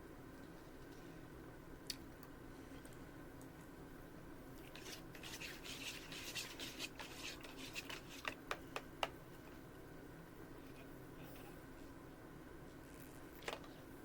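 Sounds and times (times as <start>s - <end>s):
scratchy rustling: 4.6s - 8.4s.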